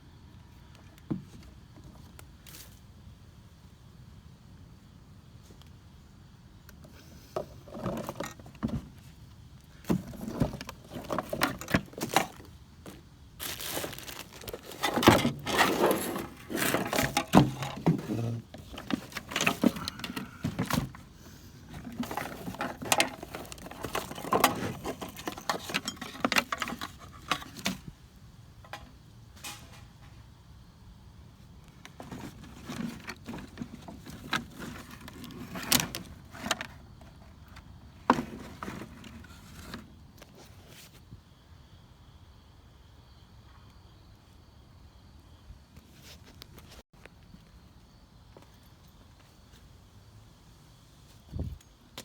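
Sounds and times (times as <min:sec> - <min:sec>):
rummaging through scrap: 0:07.4 - 0:09.0, 0:09.8 - 0:27.9, 0:31.9 - 0:41.0.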